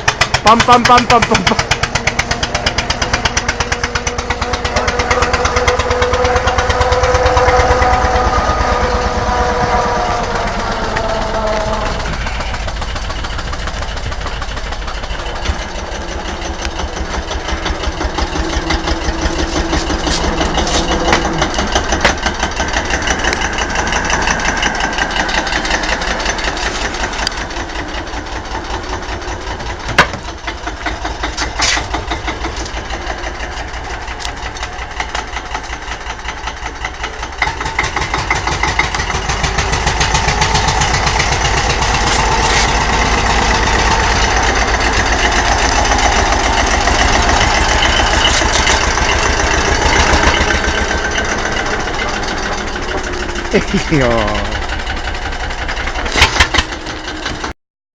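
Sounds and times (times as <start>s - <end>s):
tractor diesel engine running: 0.0s - 57.6s
whining tone: 0.6s - 28.2s.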